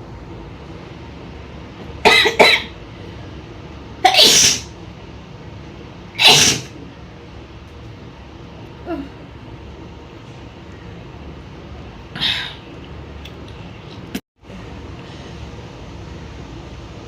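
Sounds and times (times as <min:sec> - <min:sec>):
woman sneezing: 0:04.1 - 0:04.7, 0:06.2 - 0:06.7.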